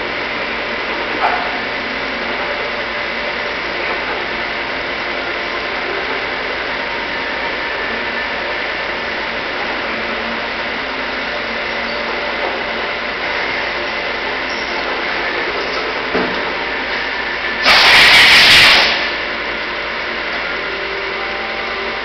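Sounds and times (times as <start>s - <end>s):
machine tool running with whine: 0.0s - 22.0s.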